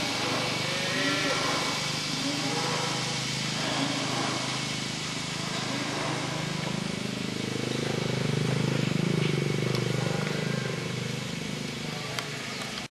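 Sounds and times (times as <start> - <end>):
engine running and speeding up: 0.0 - 12.9.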